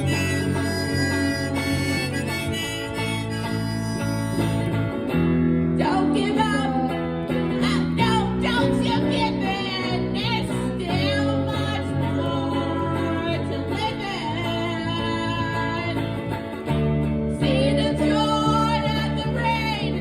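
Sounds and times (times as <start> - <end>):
person singing: 0.0 - 5.0, 5.8 - 16.2, 17.4 - 20.0
harmonica: 0.0 - 5.5
guitar: 0.0 - 20.0.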